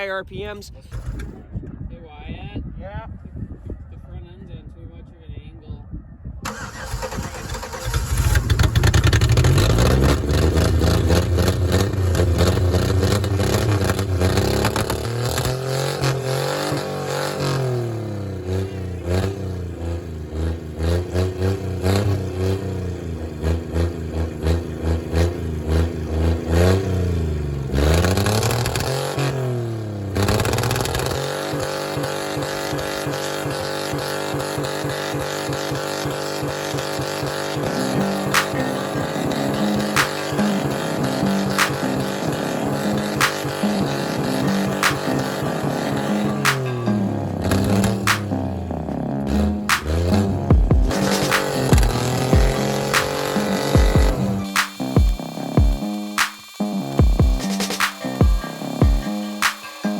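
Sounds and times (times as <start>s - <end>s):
car engine revving hard: 6.5s - 59.8s.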